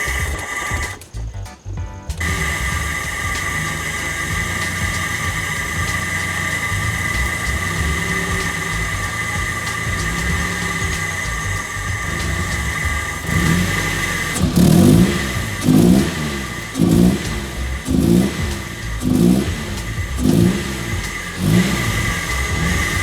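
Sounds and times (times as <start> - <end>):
car engine revving: 0.0 - 1.3, 2.1 - 23.0.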